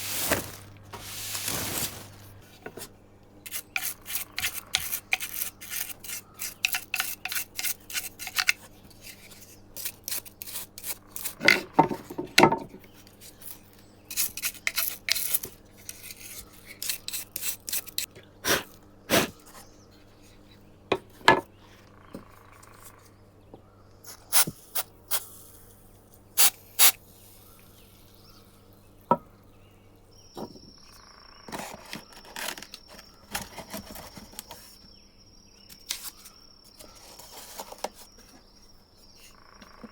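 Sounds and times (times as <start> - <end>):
hand tool rasping strokes: 3.5 - 11.7, 14.1 - 18.1.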